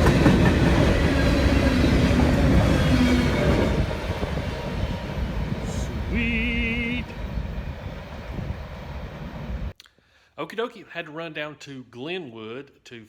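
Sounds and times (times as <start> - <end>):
freight train wheels rumbling: 0.0 - 9.7.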